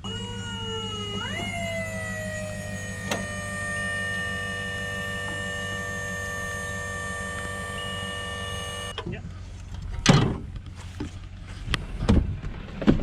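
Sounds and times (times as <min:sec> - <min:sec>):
motor whining: 0:00.0 - 0:09.0
low steady hum: 0:00.0 - 0:13.0.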